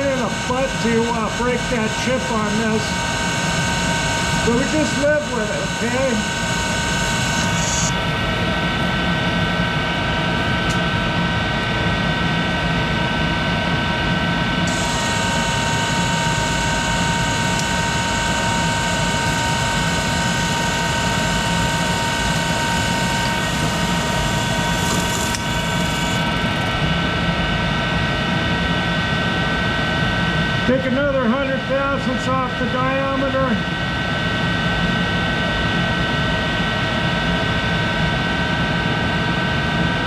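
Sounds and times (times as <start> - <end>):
lathe running with mechanical whine: 0.0 - 27.5.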